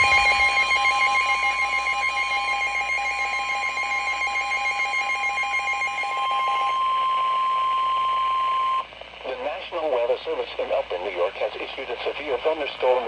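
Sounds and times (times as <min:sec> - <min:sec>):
two-tone emergency alert tone: 0:00.0 - 0:08.9.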